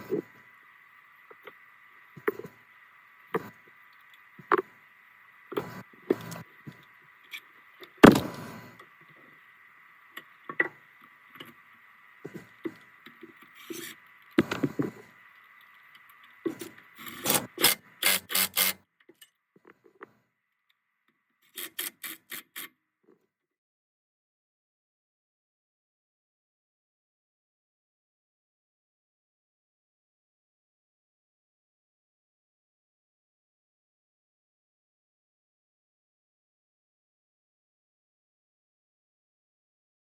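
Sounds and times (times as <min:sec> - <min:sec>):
hand tools clinking and scraping: 0:16.5 - 0:19.3
sharp clicks: 0:17.0 - 0:18.8.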